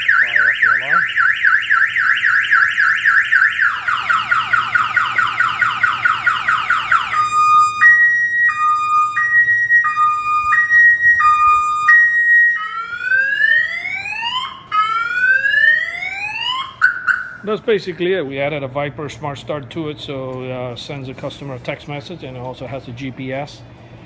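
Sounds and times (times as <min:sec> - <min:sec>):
car alarm siren: 0:00.0 - 0:17.6.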